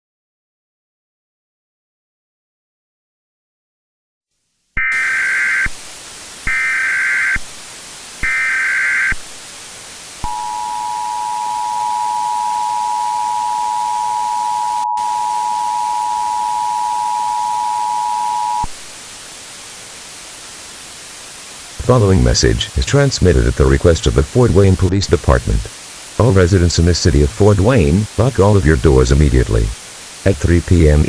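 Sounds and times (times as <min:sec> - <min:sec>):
static hiss: 0:04.3 - 0:31.0
screeching data tones: 0:04.8 - 0:05.8, 0:06.5 - 0:07.4, 0:08.2 - 0:09.2, 0:10.2 - 0:18.7
two-tone attention signal: 0:10.2 - 0:18.7.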